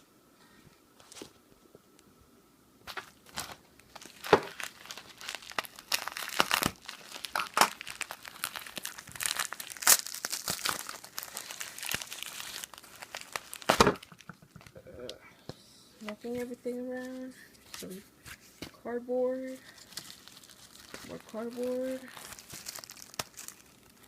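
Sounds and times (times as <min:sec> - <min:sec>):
packaging crinkling and tearing: 0:02.9 - 0:14.7, 0:19.6 - 0:24.0.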